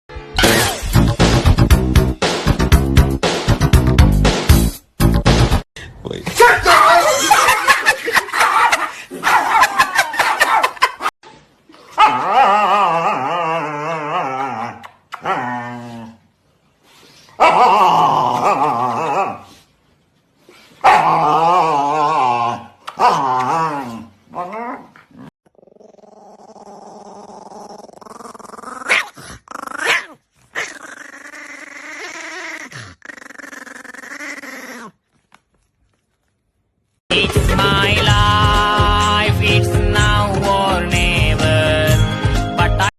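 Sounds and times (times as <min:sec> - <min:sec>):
dog barking: 0:08.4 - 0:10.8, 0:20.8 - 0:21.1, 0:28.9 - 0:29.2, 0:29.8 - 0:30.2
dog growling: 0:21.0 - 0:35.0.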